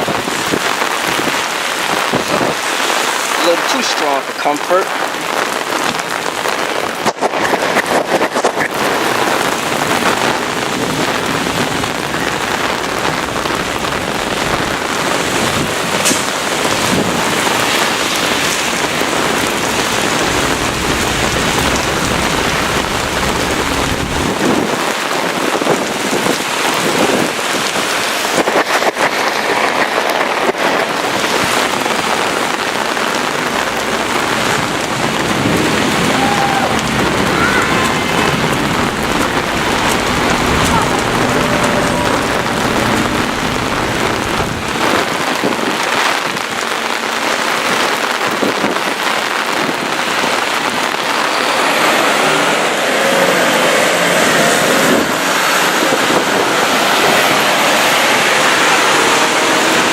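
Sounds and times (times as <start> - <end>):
heavy rain pouring: 0.0 - 59.9
strong gusty wind: 0.0 - 59.9
deep thunder rumble: 5.7 - 27.6, 30.6 - 46.6.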